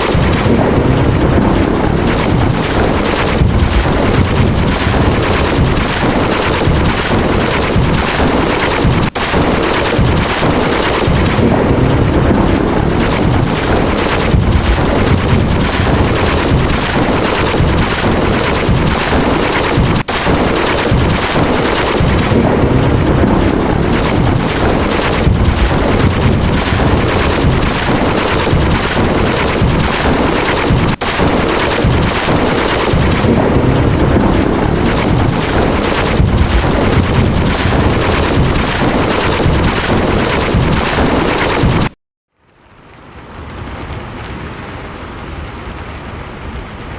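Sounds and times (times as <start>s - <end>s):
lightning cracks and thunder: 0.0s - 42.0s.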